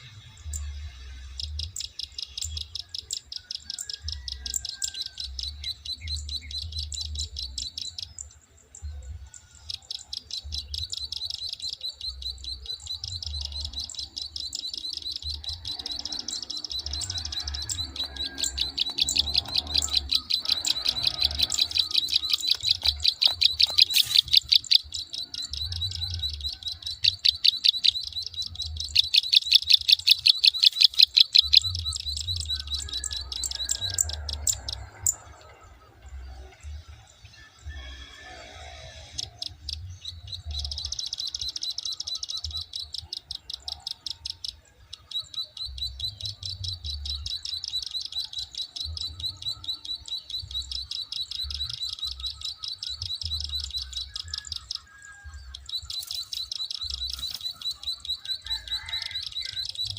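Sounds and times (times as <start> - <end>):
bird clicking calls: 13.0 - 25.6, 26.9 - 35.2.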